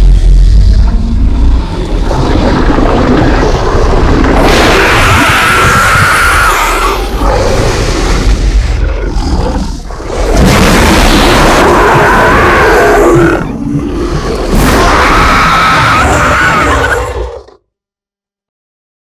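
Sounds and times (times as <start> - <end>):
monster roaring: 0.0 - 17.6.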